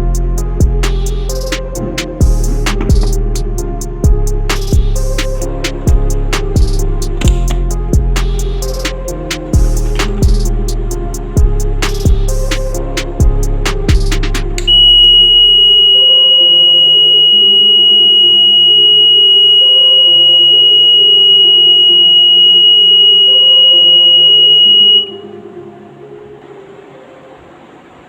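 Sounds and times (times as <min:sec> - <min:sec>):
background music: 0:00.0 - 0:28.0
high-pitched alarm buzzer tone: 0:14.7 - 0:25.3.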